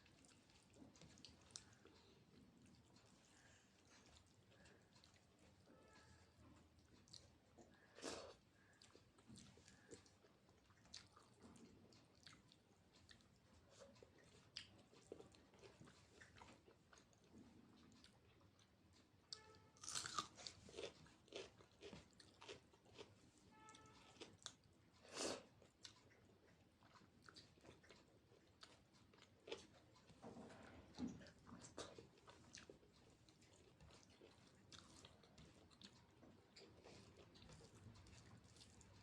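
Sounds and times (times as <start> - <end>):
person chewing food: 0.0 - 39.0
crunchy bites: 19.8 - 21.9.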